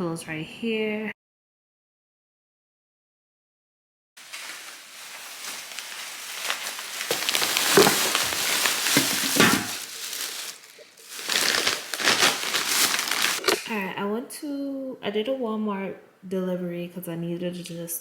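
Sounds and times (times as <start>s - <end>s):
grocery bags rustling: 4.2s - 13.6s.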